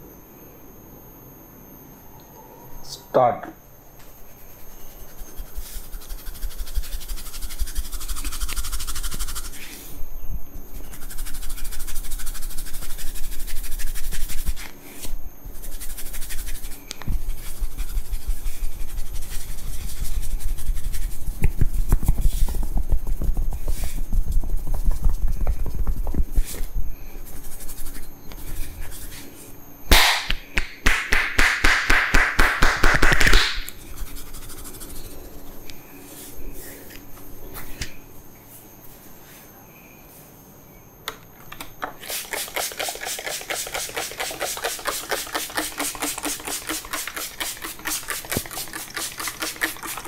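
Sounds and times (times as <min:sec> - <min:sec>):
scratchy rubbing through hair: 0:04.3 - 0:09.8, 0:10.8 - 0:29.4, 0:33.8 - 0:35.5, 0:42.1 - 0:50.0
hands patting a head: 0:15.7 - 0:26.7, 0:29.9 - 0:33.7, 0:42.2 - 0:50.0.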